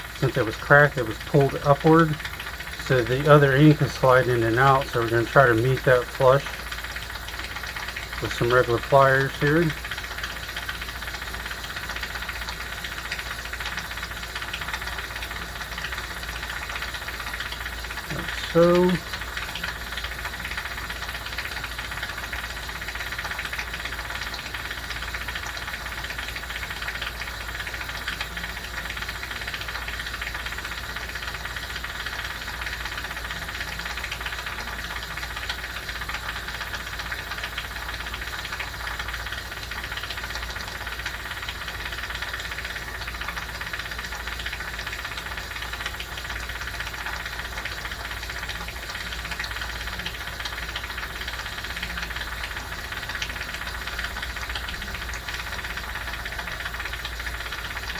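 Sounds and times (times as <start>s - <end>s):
machine whirring hum: 0.0s - 13.3s, 14.4s - 21.2s.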